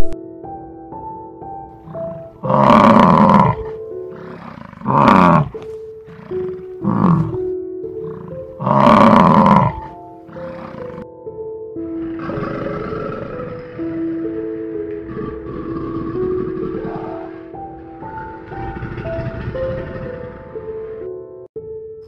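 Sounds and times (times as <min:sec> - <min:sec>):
background music sustained notes: 0:00.0 - 0:22.0
large animal calling: 0:01.8 - 0:11.0, 0:15.0 - 0:21.0.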